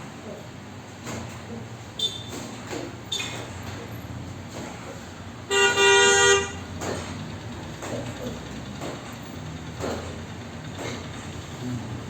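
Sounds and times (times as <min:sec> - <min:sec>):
vehicle horn honk: 0:05.5 - 0:06.6.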